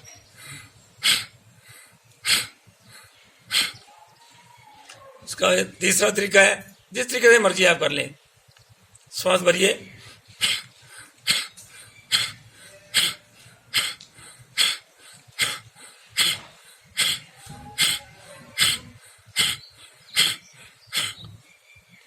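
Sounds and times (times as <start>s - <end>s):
man forceful nasal breathing: 0.0s - 3.8s, 9.9s - 21.4s.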